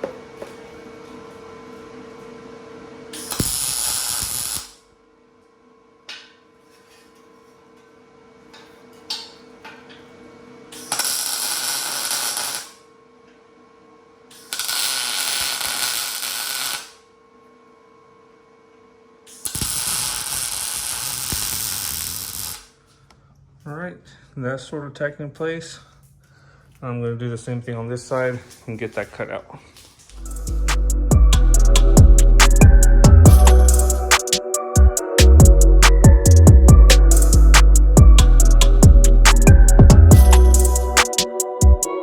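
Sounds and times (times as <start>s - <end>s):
welding arc noise: 3.2s - 4.9s, 10.7s - 12.9s, 14.3s - 17.1s, 19.3s - 22.8s
steady hum: 30.1s - 42.0s.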